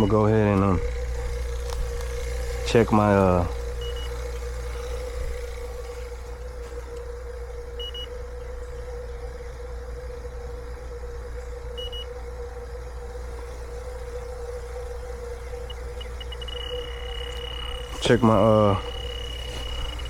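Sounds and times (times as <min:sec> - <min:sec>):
vacuum pump humming: 0:00.0 - 0:20.0.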